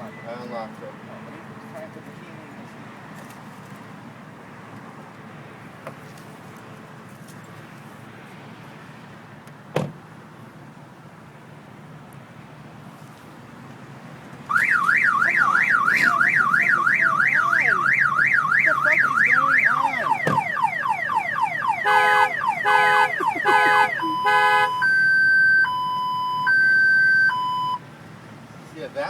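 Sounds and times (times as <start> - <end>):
car alarm siren: 14.5 - 27.8.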